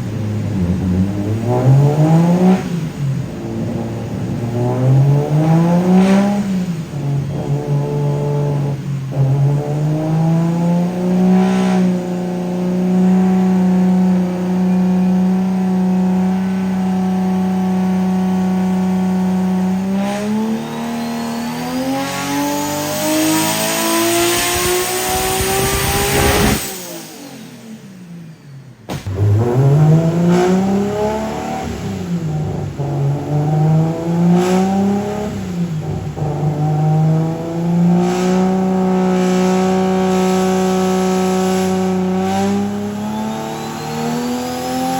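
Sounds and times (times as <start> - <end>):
car engine revving on a dyno: 0.0 - 44.9
turbo whine: 11.9 - 34.2.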